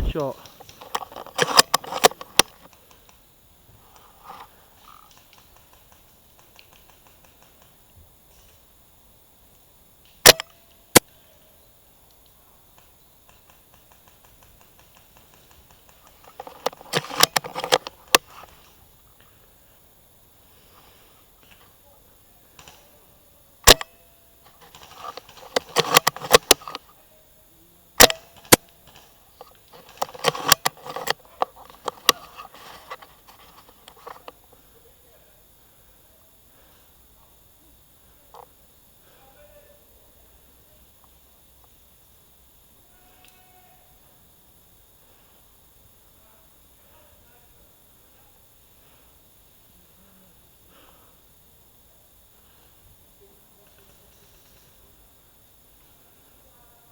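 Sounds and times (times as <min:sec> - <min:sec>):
airsoft gun cracks: 0:00.0 - 0:02.9, 0:10.1 - 0:11.2, 0:23.6 - 0:24.0, 0:24.7 - 0:26.8, 0:28.0 - 0:29.1, 0:29.8 - 0:31.2
quick clicks: 0:00.0 - 0:03.2, 0:12.1 - 0:19.3, 0:23.6 - 0:26.8, 0:28.0 - 0:34.4
faint clicks and rustles: 0:00.0 - 0:11.4, 0:12.0 - 0:39.2, 0:47.8 - 0:56.6
suppressed rifle shots: 0:01.3 - 0:02.5, 0:10.2 - 0:11.2, 0:16.4 - 0:18.3, 0:23.6 - 0:24.0, 0:28.0 - 0:29.0, 0:30.1 - 0:31.0.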